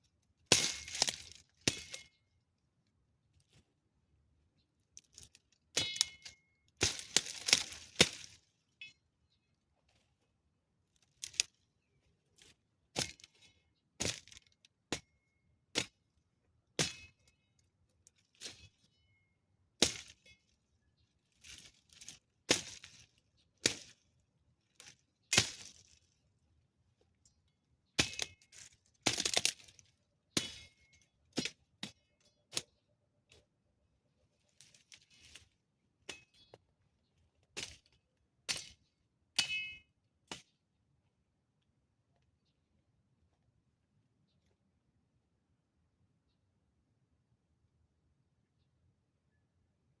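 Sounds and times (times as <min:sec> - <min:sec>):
branches cracking and snapping: 0:00.5 - 0:02.1, 0:06.8 - 0:08.5, 0:11.2 - 0:11.6, 0:14.0 - 0:14.6, 0:19.8 - 0:20.2, 0:21.4 - 0:24.0, 0:24.8 - 0:26.1, 0:28.0 - 0:29.9.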